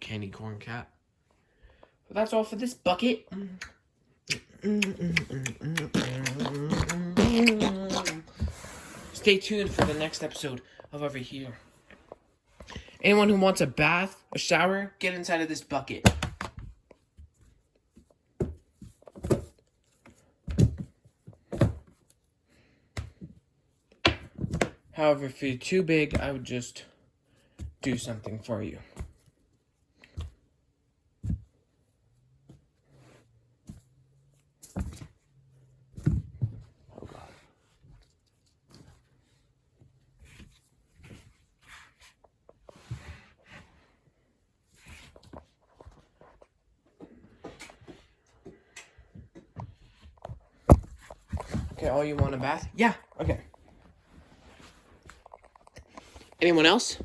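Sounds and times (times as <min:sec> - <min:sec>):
rustling of stuffed toys: 0:06.0 - 0:15.8, 0:16.5 - 0:57.0.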